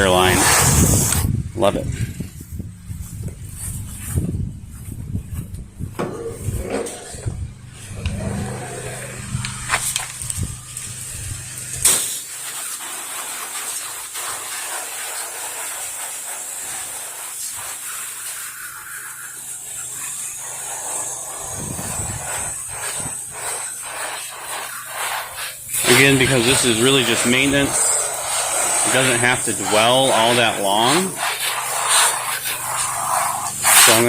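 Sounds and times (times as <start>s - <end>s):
pressure washer spraying: 0.0s - 1.4s, 6.0s - 34.0s
low rumble: 0.6s - 11.8s.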